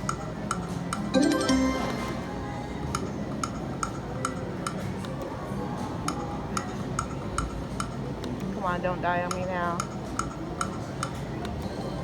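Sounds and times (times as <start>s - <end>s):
casino background noise: 0.0s - 12.0s
slot machine ticks: 1.1s - 2.2s
slot machine music: 1.1s - 2.5s.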